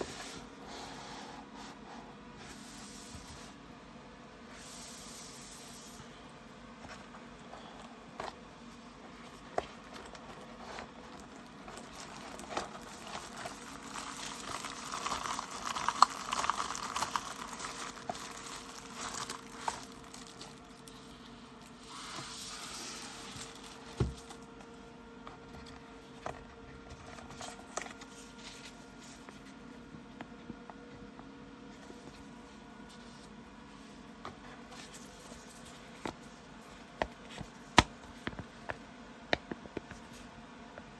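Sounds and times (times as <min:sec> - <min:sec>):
packaging crinkling and rustling: 0:06.8 - 0:24.8.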